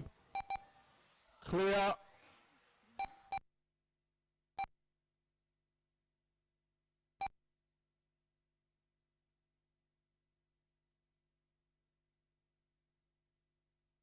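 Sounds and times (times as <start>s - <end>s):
short electronic beeps: 0.3s - 0.7s, 3.0s - 3.4s.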